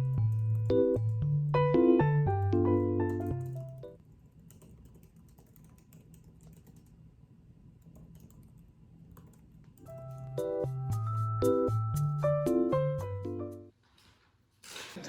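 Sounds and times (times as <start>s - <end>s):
piano music: 0.0s - 4.0s, 9.9s - 13.7s
keyboard typing clicks: 2.5s - 7.0s, 7.8s - 10.3s.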